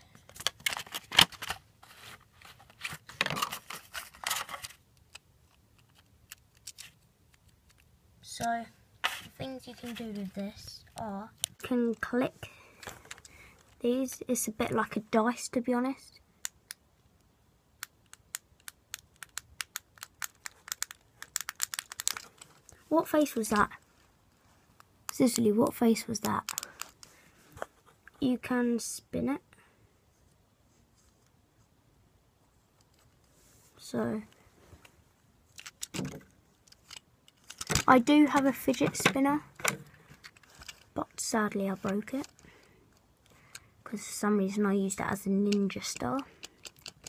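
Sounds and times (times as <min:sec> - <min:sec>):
packaging rustling and scraping: 0:00.3 - 0:04.8.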